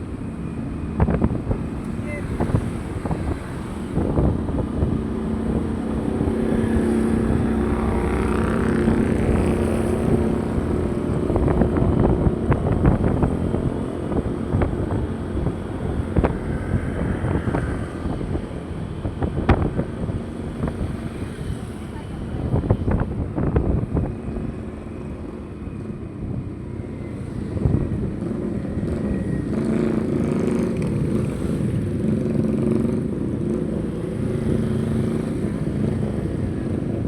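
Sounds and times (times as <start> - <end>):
wind noise on microphone: 0.0 - 37.0.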